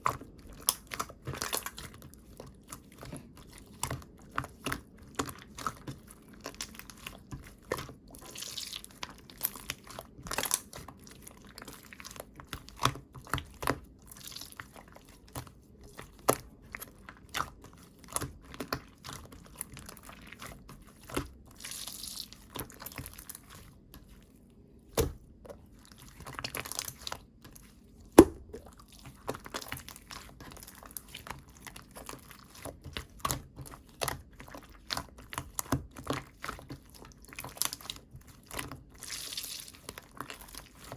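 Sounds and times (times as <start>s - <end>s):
slime squished by hand: 28.1s - 30.6s.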